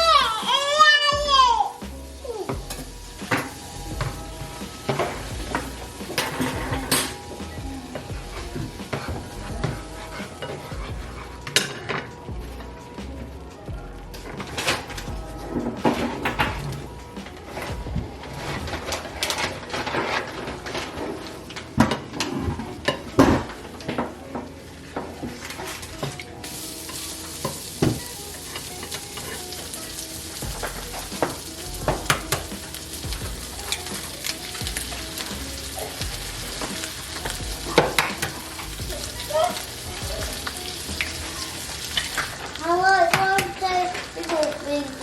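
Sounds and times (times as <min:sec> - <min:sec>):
food sizzling in a hot pan: 0:00.0 - 0:10.7, 0:26.4 - 0:45.0.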